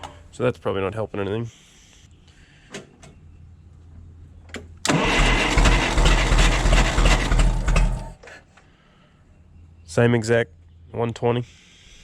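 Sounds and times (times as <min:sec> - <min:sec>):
engine cranking on starter: 0:04.8 - 0:08.2.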